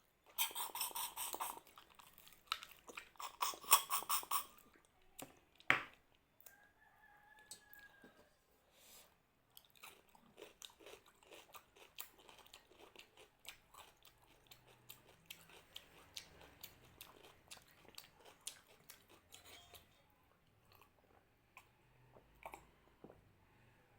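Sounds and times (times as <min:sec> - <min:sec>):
close-up chewing with mouth clicks: 0:00.2 - 0:06.6, 0:09.5 - 0:19.8, 0:20.6 - 0:23.3.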